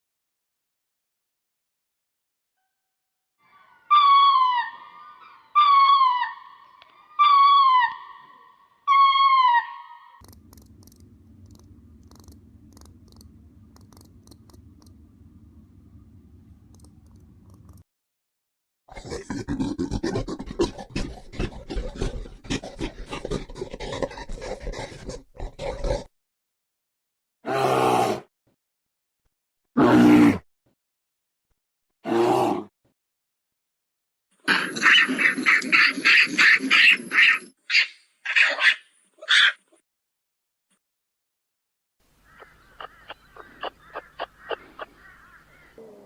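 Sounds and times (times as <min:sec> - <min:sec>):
animal crying with falling pitch: 0:03.4 - 0:10.2
animal making rapid breathy calls: 0:18.9 - 0:26.1.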